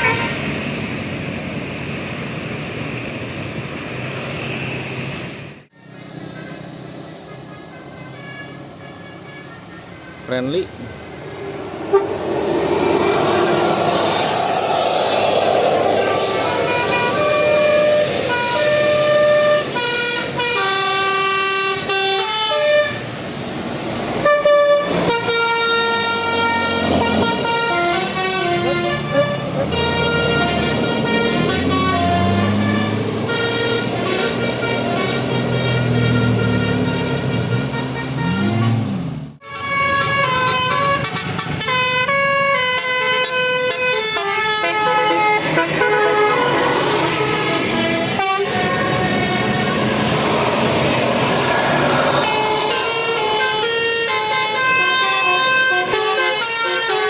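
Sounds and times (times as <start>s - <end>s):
bus air horns playing melody: 0.0s - 0.5s, 6.3s - 10.4s, 11.8s - 14.1s, 15.8s - 23.2s, 24.2s - 57.0s
siren-like rise and fall: 11.2s - 18.5s.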